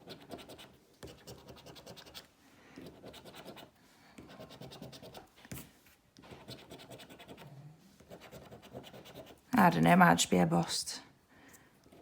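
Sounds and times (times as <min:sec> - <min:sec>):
scratch card being scratched: 0:00.0 - 0:02.3, 0:02.9 - 0:03.7, 0:04.3 - 0:05.6, 0:06.2 - 0:07.5, 0:08.1 - 0:09.4.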